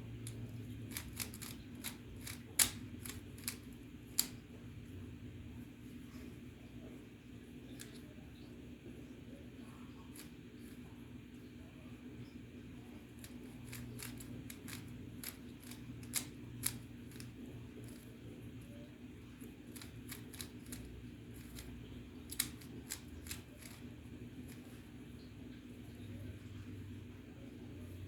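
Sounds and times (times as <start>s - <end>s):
steady hum: 0.0s - 28.0s
plastic puzzle cube clicking: 0.3s - 3.6s, 13.2s - 17.2s, 19.7s - 21.7s, 22.3s - 23.8s.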